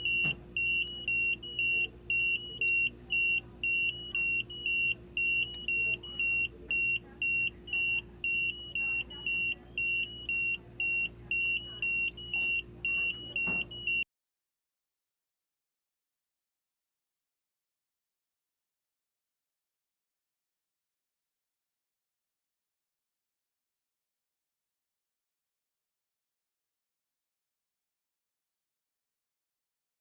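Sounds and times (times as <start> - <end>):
high-pitched alarm beeping: 0.0 - 14.0
steady low hum: 0.0 - 14.0.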